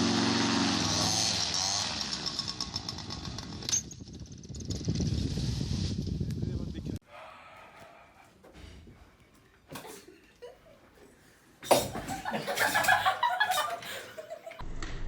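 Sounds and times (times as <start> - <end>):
loud burst of laughter: 11.9 - 14.6.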